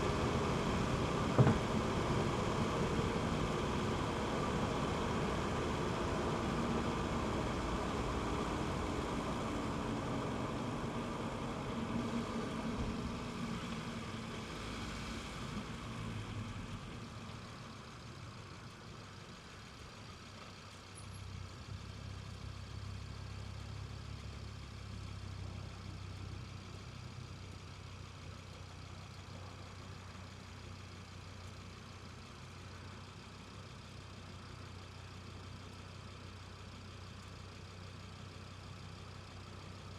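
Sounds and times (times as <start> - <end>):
car engine droning: 0.0 - 21.8.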